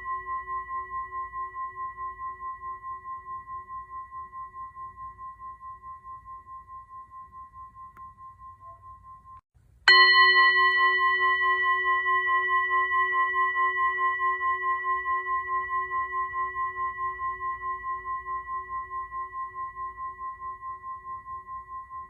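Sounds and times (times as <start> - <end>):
singing bowl ringing: 0.0 - 22.0.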